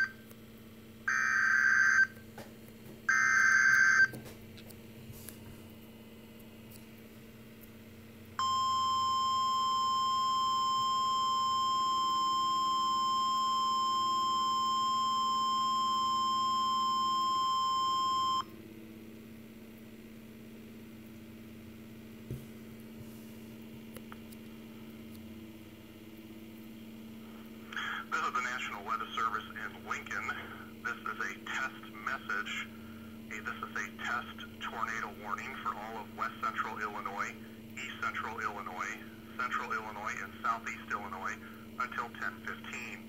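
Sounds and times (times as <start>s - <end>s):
faint radio hum and hiss: 0.0s - 2.6s, 14.5s - 43.0s
loud steady alarm tone: 1.1s - 2.2s, 3.1s - 4.2s, 8.4s - 18.5s.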